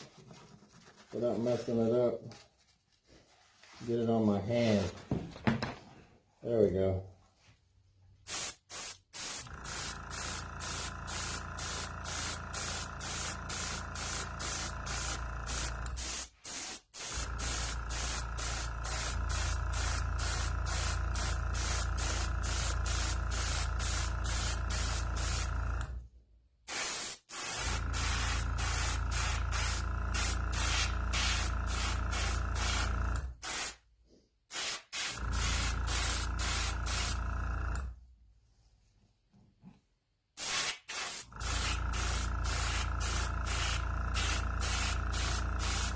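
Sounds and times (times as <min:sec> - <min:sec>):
airbrush spraying hiss: 0:08.2 - 0:25.5, 0:26.7 - 0:33.8, 0:34.5 - 0:37.2, 0:40.4 - 0:45.9.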